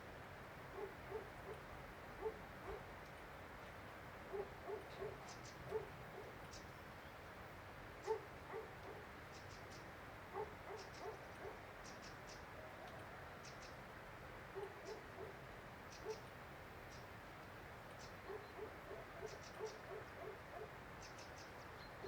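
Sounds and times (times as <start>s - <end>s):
steady background hiss: 0.0s - 22.0s
faint soft ticks: 3.0s - 4.0s, 11.8s - 13.7s.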